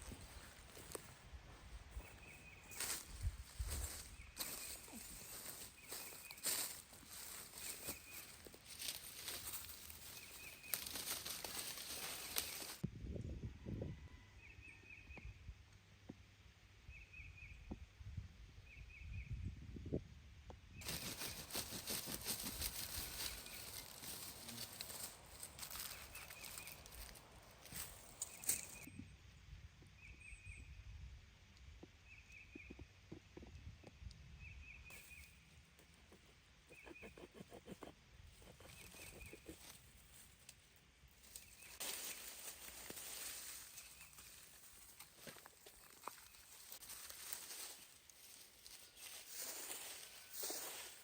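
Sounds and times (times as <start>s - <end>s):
small bird chirping: 20.7s - 29.2s, 34.5s - 40.1s.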